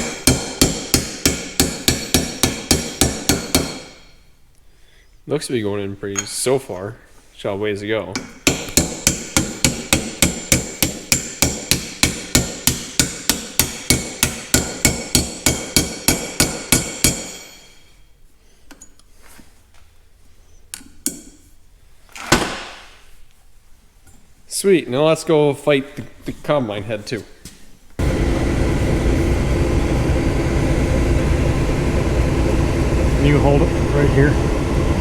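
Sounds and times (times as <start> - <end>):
hammer striking metal: 0.0 - 4.2, 8.2 - 17.9.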